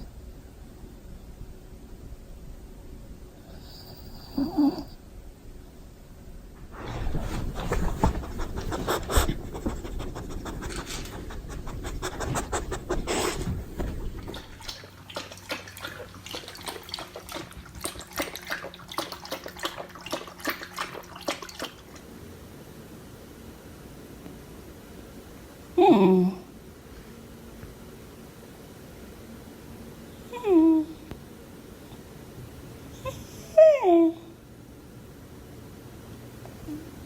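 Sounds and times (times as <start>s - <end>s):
dog panting: 6.7s - 21.7s.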